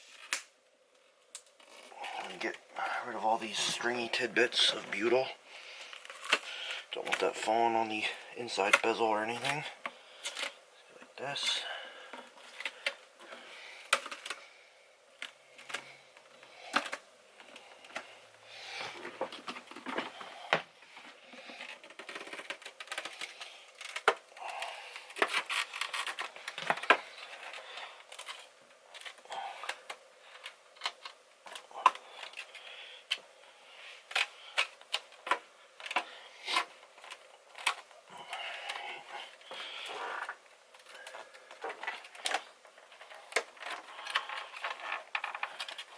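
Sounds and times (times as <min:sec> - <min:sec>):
hard plastic clicks and scraping: 0:08.6 - 0:10.6, 0:12.1 - 0:14.5, 0:15.2 - 0:18.1, 0:18.9 - 0:33.2, 0:34.0 - 0:45.9.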